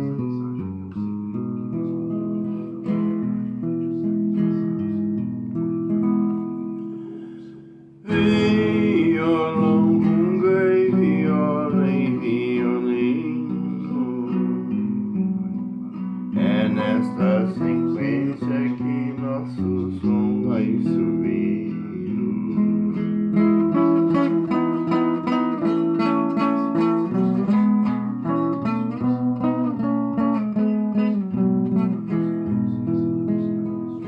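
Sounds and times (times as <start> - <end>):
acoustic plucked string music: 0.0 - 34.0.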